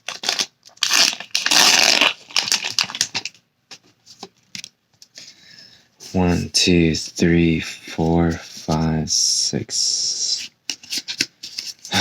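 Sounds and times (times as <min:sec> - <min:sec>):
foil wrapper crinkling: 0:00.0 - 0:03.4.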